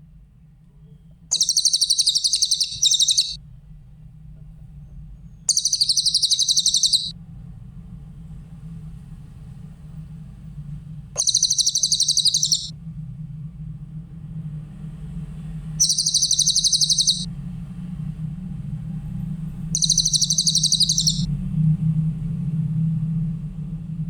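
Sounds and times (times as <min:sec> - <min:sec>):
low steady hum: 0:00.0 - 0:24.0
songbird trilling: 0:01.3 - 0:03.4, 0:05.5 - 0:07.1, 0:11.2 - 0:12.7, 0:15.8 - 0:17.3, 0:19.8 - 0:21.3.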